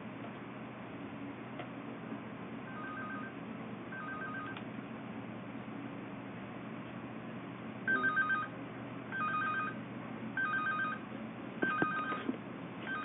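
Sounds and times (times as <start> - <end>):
electronic telephone ringer trilling: 2.7 - 3.3, 4.0 - 4.6, 7.9 - 8.5, 9.2 - 9.8, 10.4 - 11.0, 11.6 - 12.2.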